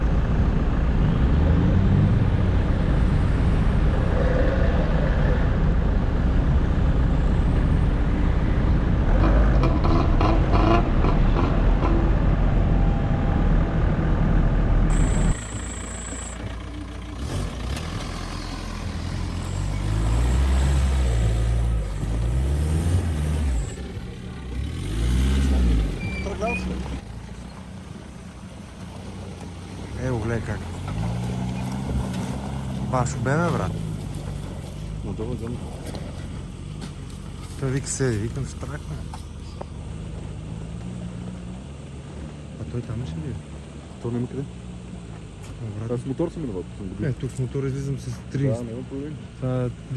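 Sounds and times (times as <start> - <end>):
engine revving: 0.0 - 49.9
off-road vehicle driving in snow: 0.0 - 49.9.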